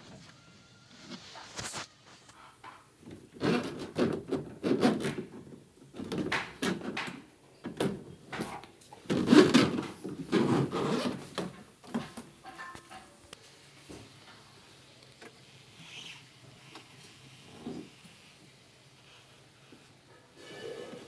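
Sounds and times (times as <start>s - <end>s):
hard parts rubbing and scraping: 20.3s - 21.0s.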